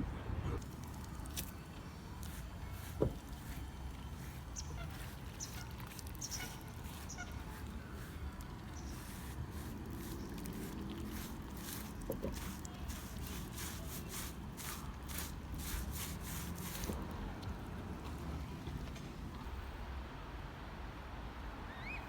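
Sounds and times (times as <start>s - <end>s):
short scraping strokes: 2.1s - 18.7s.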